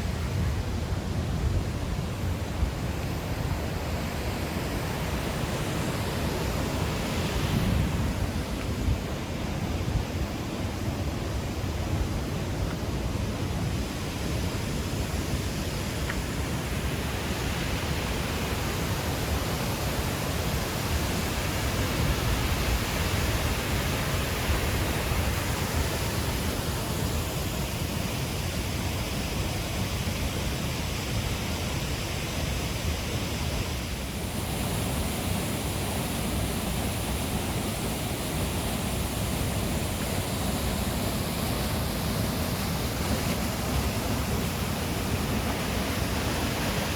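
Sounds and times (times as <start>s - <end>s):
waterfall rushing: 33.5s - 46.9s.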